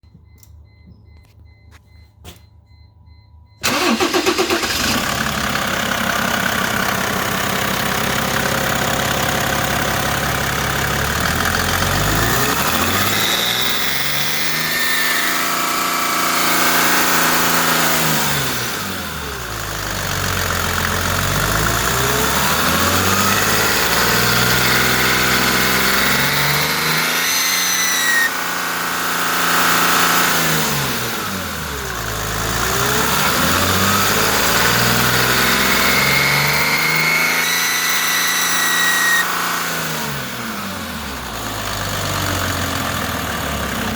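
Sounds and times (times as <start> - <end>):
diesel engine starting and revving: 3.1 - 43.9
high-pitched screech: 23.8 - 28.4, 35.5 - 39.4.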